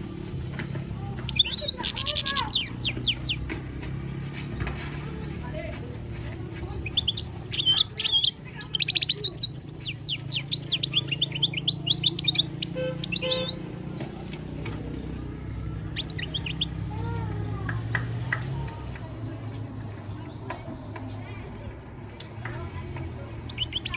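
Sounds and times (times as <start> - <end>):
goldfinch twittering song: 1.2 - 3.6, 6.8 - 13.7, 15.9 - 16.8, 23.4 - 23.9.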